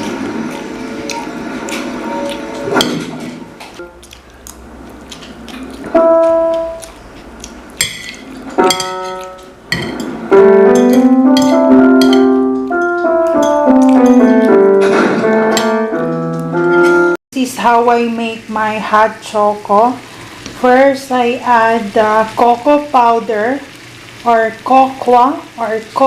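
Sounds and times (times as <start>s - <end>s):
instrumental music: 3.8s - 7.5s, 8.5s - 17.2s.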